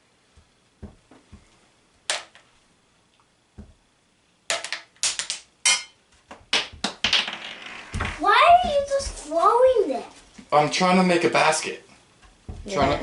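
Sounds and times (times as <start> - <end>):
marbles clattering on wooden blocks: 6.5 - 8.2.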